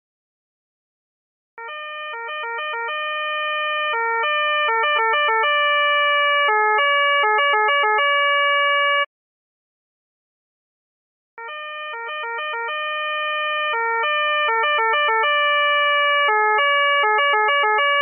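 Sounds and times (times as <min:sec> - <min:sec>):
police two-tone siren: 0:01.6 - 0:09.1, 0:11.4 - 0:18.0.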